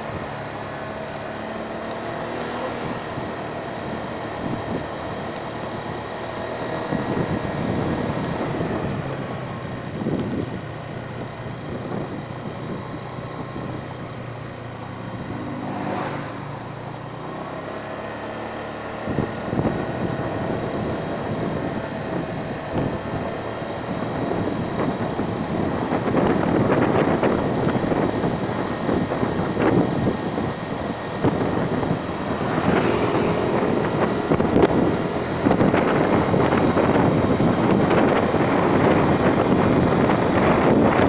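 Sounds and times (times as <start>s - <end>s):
vehicle engine running: 0.0s - 41.0s
rough rumbling: 1.5s - 18.1s, 29.0s - 41.0s
brief whoosh: 15.2s - 16.8s, 32.3s - 34.0s.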